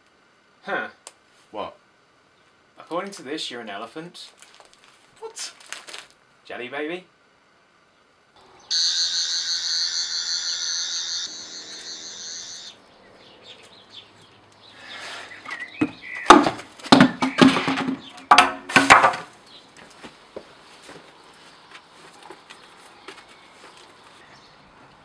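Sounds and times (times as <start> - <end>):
electronic warbling whirr: 8.7 - 12.8
loud knocks and clatter: 15.8 - 19.3.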